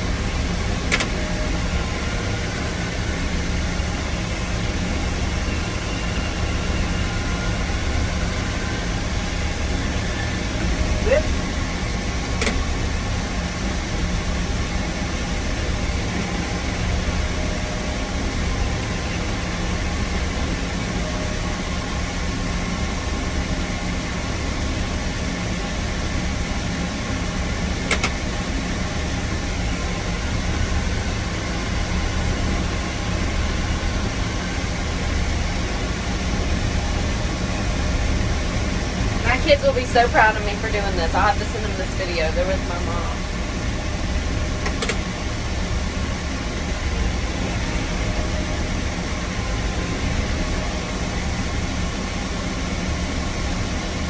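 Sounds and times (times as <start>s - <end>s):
vehicle engine droning: 0.0s - 54.0s
single click: 0.9s - 1.1s, 27.9s - 28.2s.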